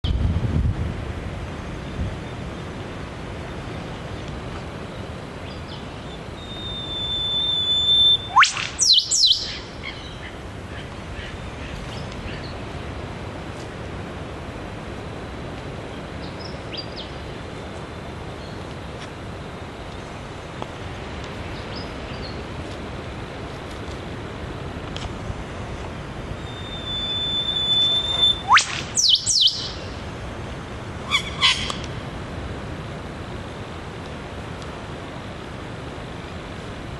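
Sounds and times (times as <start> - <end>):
traffic noise: 0.0 - 36.9
bird whistle ending in whip-crack: 6.5 - 9.6, 26.6 - 29.7
bird descending notes: 26.5 - 29.8.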